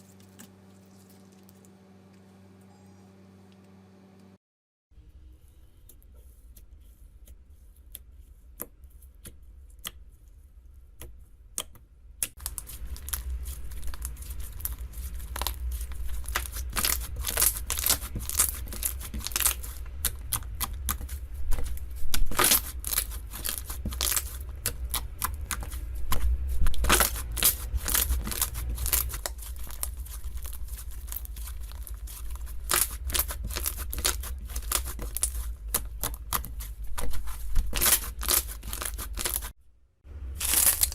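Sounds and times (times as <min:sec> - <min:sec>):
slime crackling and popping: 0:12.3 - 0:39.5, 0:40.4 - 0:40.9.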